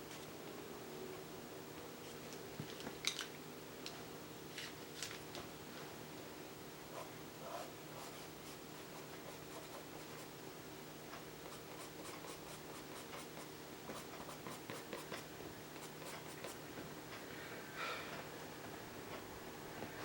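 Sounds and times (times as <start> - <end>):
faint steady hum: 0.0 - 20.0
pencil scratching on paper: 7.0 - 10.3, 11.5 - 16.6.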